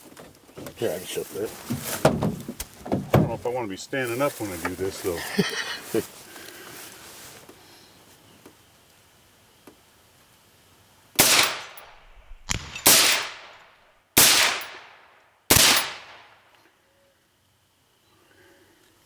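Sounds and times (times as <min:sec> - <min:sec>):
gunshots with short echo: 0:11.2 - 0:16.3.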